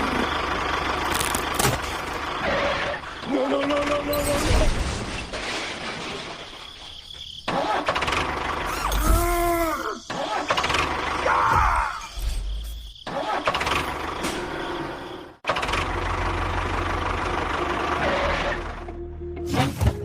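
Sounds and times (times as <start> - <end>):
vehicle engine running: 0.0 - 3.9, 13.7 - 19.4.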